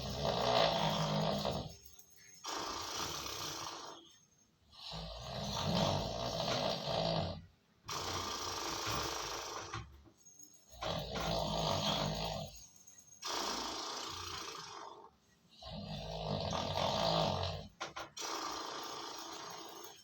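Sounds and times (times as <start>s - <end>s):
man snoring heavily: 0.0s - 1.8s, 4.8s - 9.7s, 10.8s - 12.6s, 13.3s - 20.0s.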